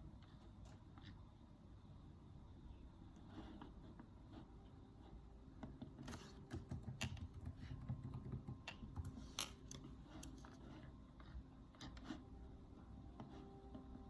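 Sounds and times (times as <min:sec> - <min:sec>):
computer keyboard typing: 0:05.8 - 0:10.8.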